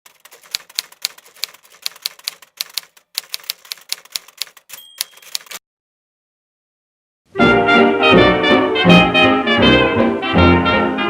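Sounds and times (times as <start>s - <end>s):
typewriter bell ringing tone: 0.1s - 5.6s
typewriter keystroke clacks: 0.1s - 5.6s.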